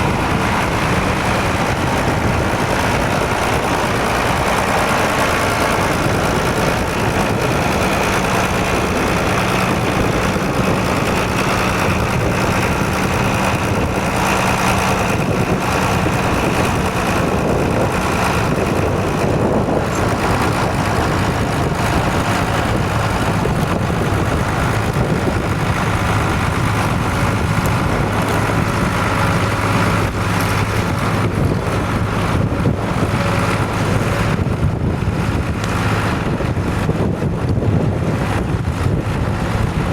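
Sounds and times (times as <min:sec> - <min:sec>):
tractor engine running under load: 0:00.0 - 0:39.9
wind noise on microphone: 0:00.0 - 0:39.9.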